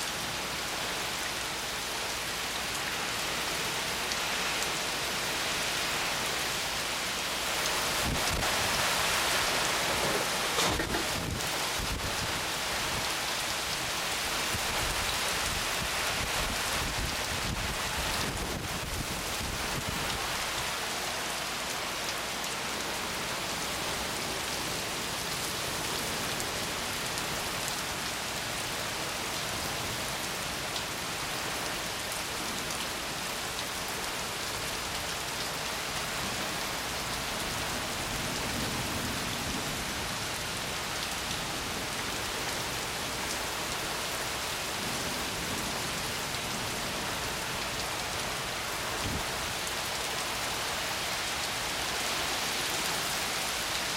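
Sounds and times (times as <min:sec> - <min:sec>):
rain hissing: 0:00.0 - 0:32.1.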